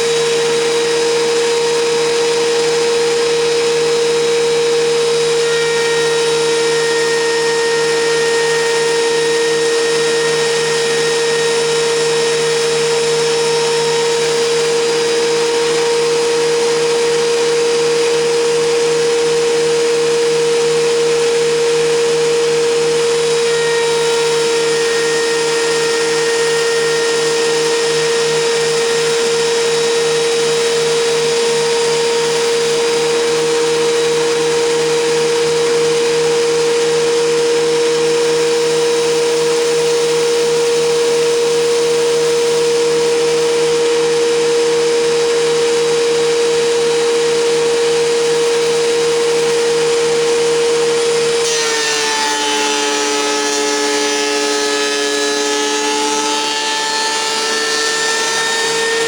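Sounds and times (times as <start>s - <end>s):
planer motor whine: 0.0s - 59.0s.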